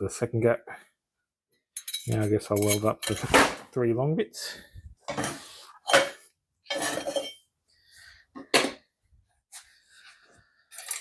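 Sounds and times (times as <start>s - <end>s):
steel pieces clinking on metal: 1.8s - 3.5s, 10.7s - 11.0s.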